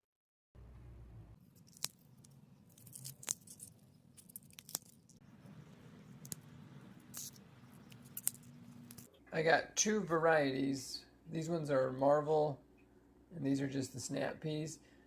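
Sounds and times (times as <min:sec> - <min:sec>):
soft crunching and crackling: 0:00.8 - 0:09.2
pea pods snapping: 0:01.5 - 0:05.2, 0:06.2 - 0:06.5, 0:07.1 - 0:09.1.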